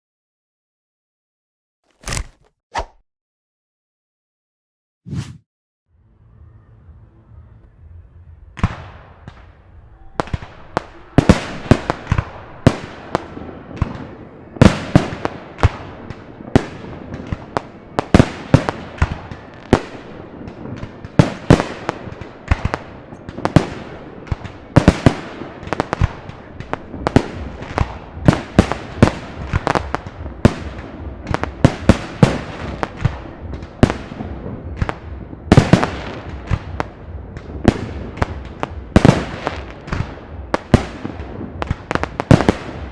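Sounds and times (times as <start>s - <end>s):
firework bursts and bangs: 10.2s - 42.9s.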